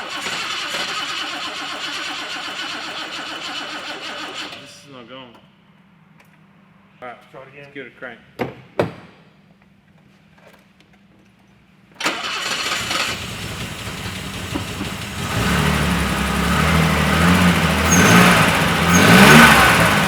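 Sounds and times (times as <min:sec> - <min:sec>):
starter motor cranking: 0:00.0 - 0:04.6, 0:12.0 - 0:20.0
car engine idling: 0:12.2 - 0:20.0.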